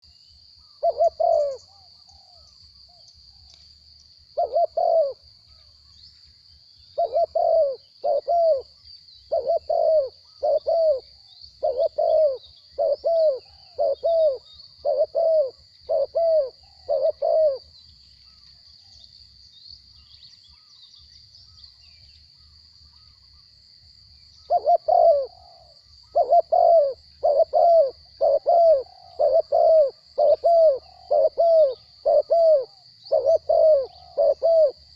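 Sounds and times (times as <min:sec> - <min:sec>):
dove cooing: 0:00.7 - 0:02.6, 0:04.4 - 0:05.7, 0:07.0 - 0:17.7, 0:24.4 - 0:34.9.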